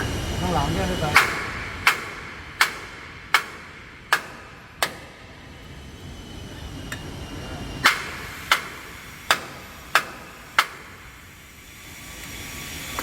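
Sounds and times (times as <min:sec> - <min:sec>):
hammer striking metal: 0:01.0 - 0:05.4, 0:07.8 - 0:11.2.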